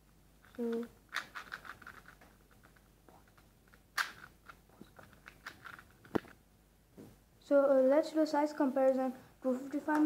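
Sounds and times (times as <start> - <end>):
plastic puzzle cube clicking: 0.4 - 6.3.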